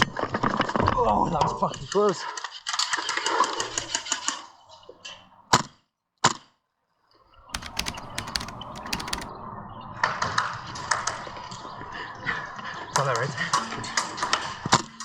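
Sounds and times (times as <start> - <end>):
rapid clicking shots: 7.6 - 9.3.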